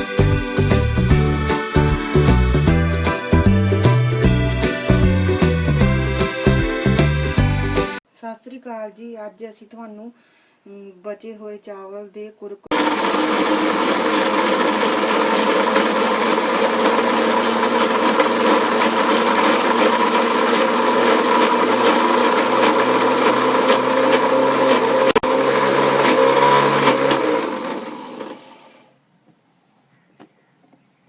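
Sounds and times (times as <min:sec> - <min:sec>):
electric mixer grinder running: 0:00.0 - 0:08.0, 0:12.7 - 0:28.9.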